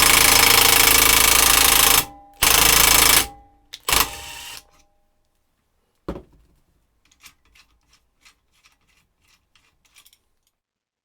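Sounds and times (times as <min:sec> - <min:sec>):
power driver running: 0:00.0 - 0:04.7.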